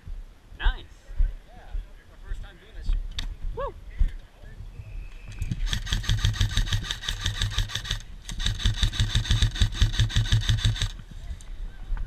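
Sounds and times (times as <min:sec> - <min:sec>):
airsoft rifle full-auto bursts: 0:05.6 - 0:11.0.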